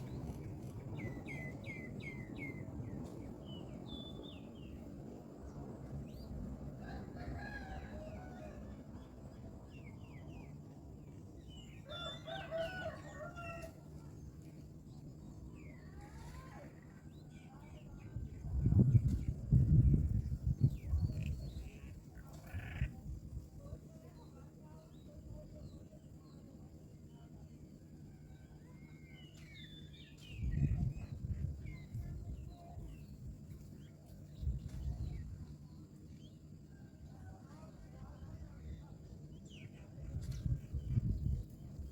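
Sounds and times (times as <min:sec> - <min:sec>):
rooster crowing: 0:06.8 - 0:08.7, 0:11.8 - 0:13.8.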